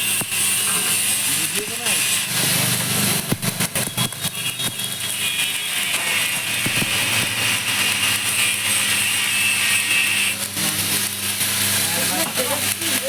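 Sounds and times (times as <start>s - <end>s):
threshing machine hum: 0.0s - 13.0s.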